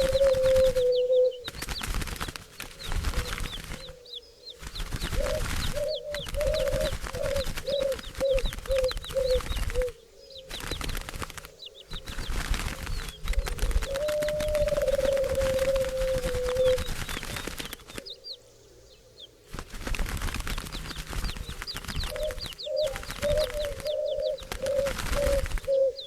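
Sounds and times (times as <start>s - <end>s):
short low bird calls: 0.0s - 1.6s, 2.8s - 10.7s, 21.7s - 26.0s
wings flapping and rustling: 0.0s - 18.4s, 19.3s - 26.0s.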